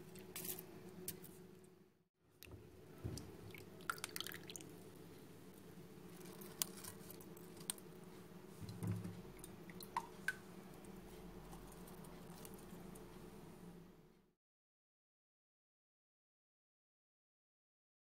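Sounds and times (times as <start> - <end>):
wet kitchen clicks and squishes: 3.2 - 4.6.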